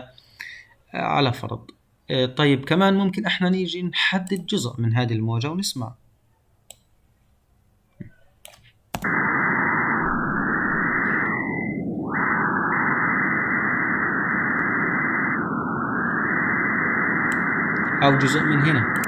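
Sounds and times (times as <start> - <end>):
steady rushing hiss: 9.0 - 19.0.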